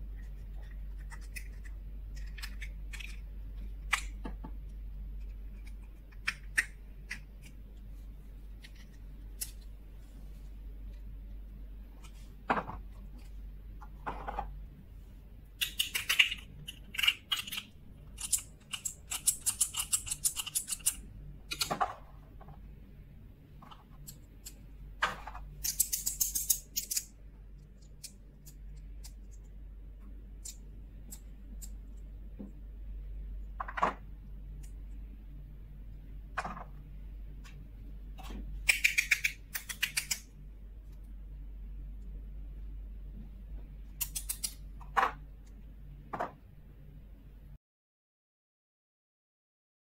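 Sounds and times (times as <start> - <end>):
low steady hum: 0.0 - 47.6
plastic toys clicking: 15.6 - 21.8, 25.6 - 27.1, 38.6 - 40.3.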